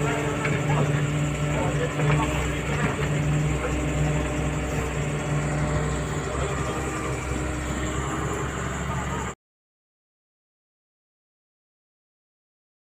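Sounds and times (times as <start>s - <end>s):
street noise: 0.0s - 9.4s
vehicle engine running: 0.0s - 9.4s.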